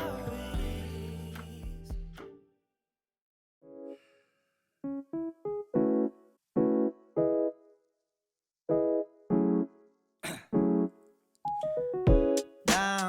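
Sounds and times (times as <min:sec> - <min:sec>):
keyboard chord stabs: 0:11.5 - 0:13.0.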